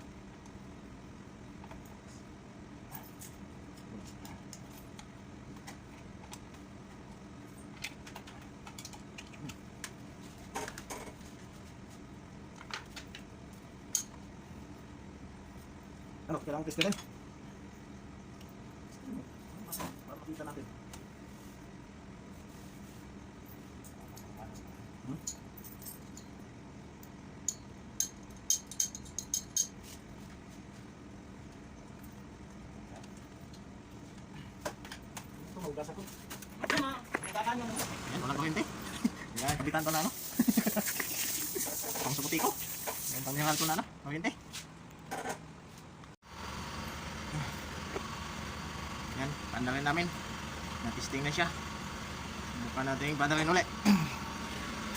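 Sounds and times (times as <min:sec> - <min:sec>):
metallic clinks of tools: 0:27.5 - 0:29.8
small metal parts clicking: 0:27.5 - 0:29.8.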